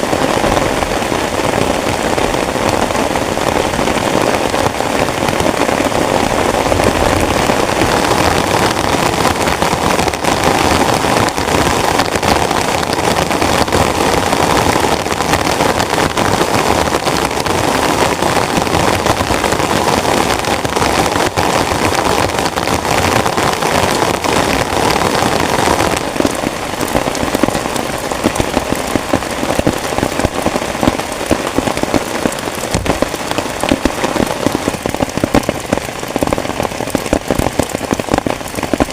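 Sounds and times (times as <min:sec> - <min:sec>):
heavy rain on a tent: 0:00.0 - 0:38.9.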